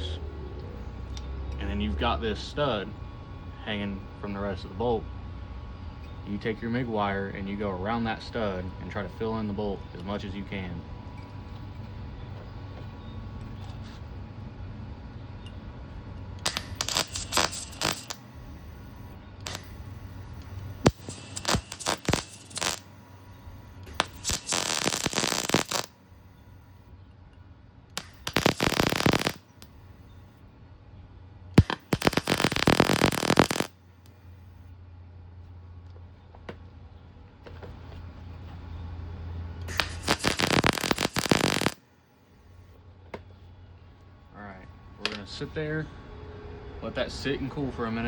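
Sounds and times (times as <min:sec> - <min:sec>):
welding arc crackling: 0:16.4 - 0:26.1, 0:28.0 - 0:30.1, 0:31.6 - 0:34.3, 0:39.7 - 0:41.8
welder low hum: 0:16.4 - 0:26.8, 0:28.0 - 0:30.3, 0:31.6 - 0:34.6, 0:39.7 - 0:41.8.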